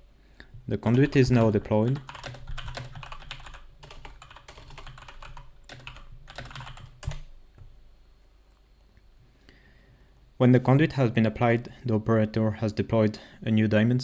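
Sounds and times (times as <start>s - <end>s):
keyboard typing clicks: 0.8s - 7.7s.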